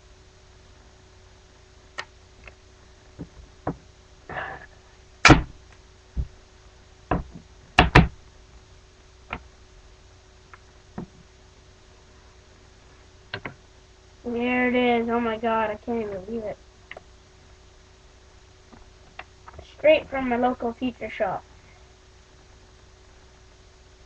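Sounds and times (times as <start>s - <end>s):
taps and knocks on box: 7.1s - 8.1s.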